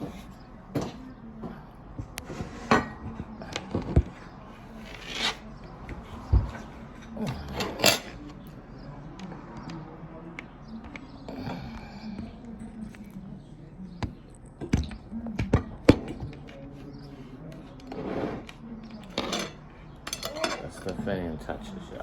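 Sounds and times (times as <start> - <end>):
utensils and dishes clinking: 4.8 - 8.6, 17.7 - 21.2.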